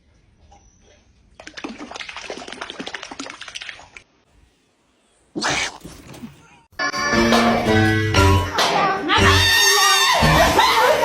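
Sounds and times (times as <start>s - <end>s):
water splashing: 1.3s - 4.1s.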